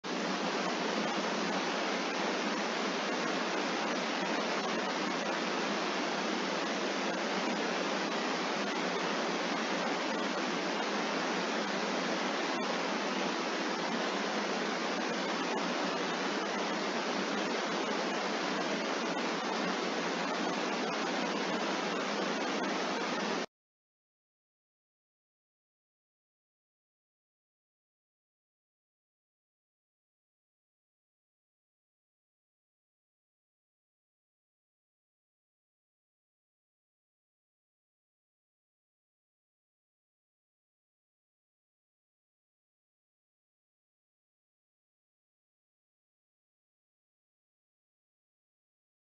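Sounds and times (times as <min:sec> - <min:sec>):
steady hiss of noise: 0:00.0 - 0:23.5.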